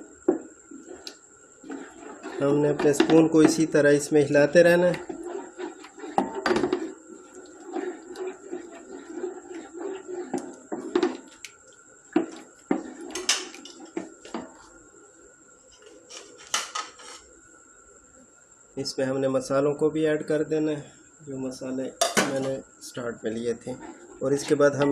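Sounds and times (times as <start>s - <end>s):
spoon scraping a pan: 0.7s - 11.5s, 12.1s - 14.5s, 23.6s - 24.9s.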